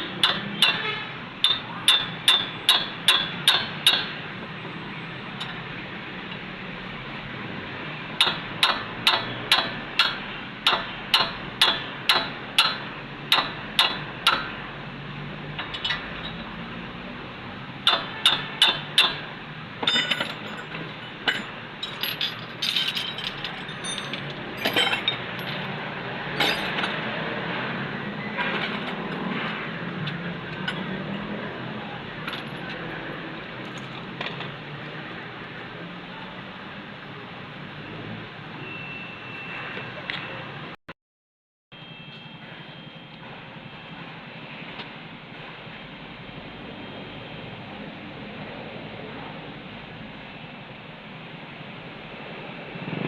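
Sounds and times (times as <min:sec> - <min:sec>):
sharp metallic taps: 0:08.2 - 0:14.5, 0:17.8 - 0:19.2
metal tools clinking: 0:15.6 - 0:16.4, 0:19.8 - 0:25.7, 0:26.4 - 0:27.0.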